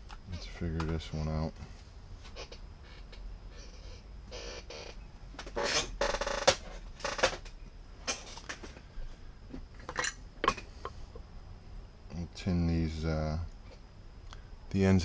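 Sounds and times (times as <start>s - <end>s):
rustling and clattering of small parts: 5.4s - 8.9s.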